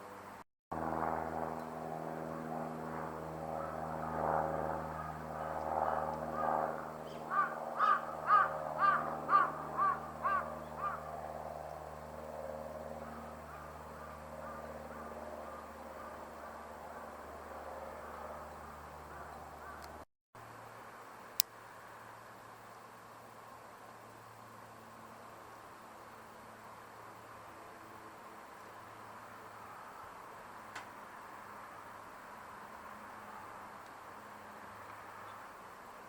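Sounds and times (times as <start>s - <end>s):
steady low hum: 0.0s - 20.0s
bird calling loudly: 7.0s - 11.1s.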